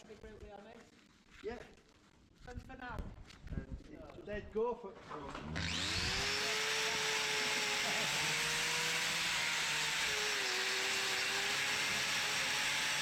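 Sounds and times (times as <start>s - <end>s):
electric power tool whining: 5.3s - 13.0s.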